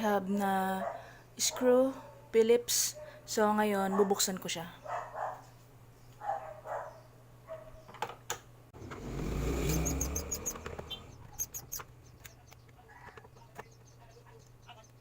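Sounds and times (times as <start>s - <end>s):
engine rumble: 8.7s - 13.9s
sharp clicks: 9.6s - 13.7s.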